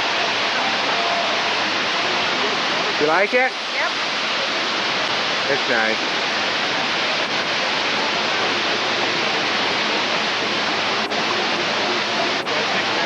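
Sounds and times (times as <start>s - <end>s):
indoor waterfall rushing: 0.0s - 13.0s.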